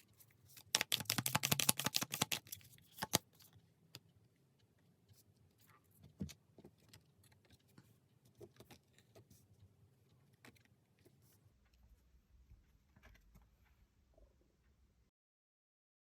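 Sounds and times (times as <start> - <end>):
cards rustling: 0.0 - 3.6.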